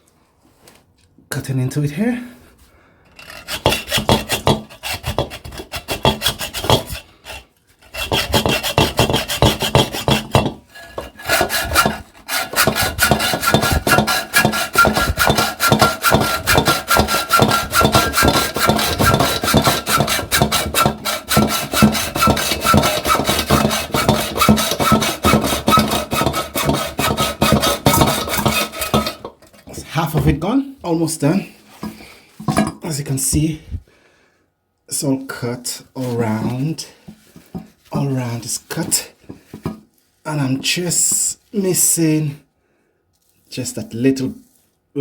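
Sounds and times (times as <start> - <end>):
hand saw cutting steel: 3.1 - 30.4, 36.0 - 39.8.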